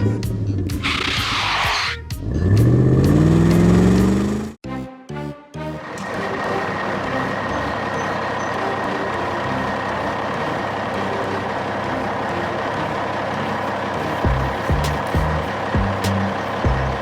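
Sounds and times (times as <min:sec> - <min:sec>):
heavy truck engine running: 0:02.2 - 0:04.6, 0:05.8 - 0:17.0.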